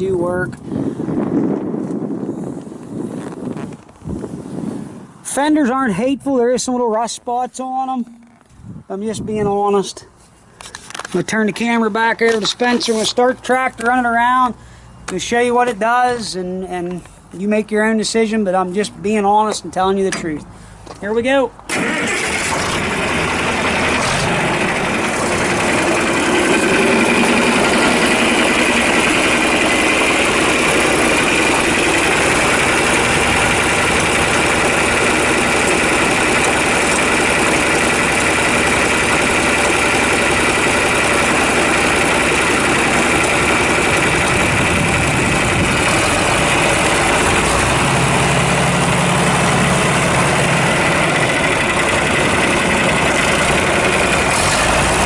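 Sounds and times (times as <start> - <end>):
diesel tractor engine running: 10.4 - 55.0.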